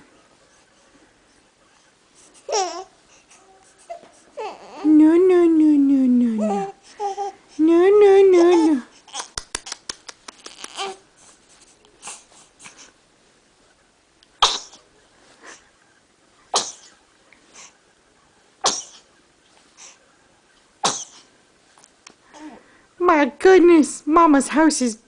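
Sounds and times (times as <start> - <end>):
soft breath: 0.0 - 4.4, 11.0 - 13.0, 15.1 - 16.0, 17.2 - 17.9, 19.5 - 20.2, 22.2 - 23.0
baby sneezing: 14.4 - 14.8, 16.5 - 17.0, 18.6 - 19.1, 20.8 - 21.3.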